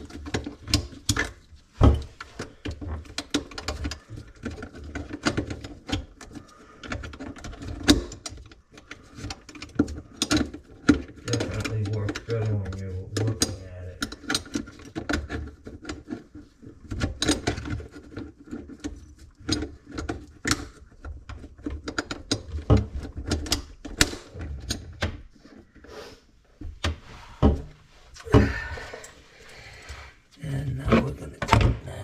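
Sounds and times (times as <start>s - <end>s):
metal hardware clicking and knocking: 0.0s - 16.2s, 16.8s - 25.6s.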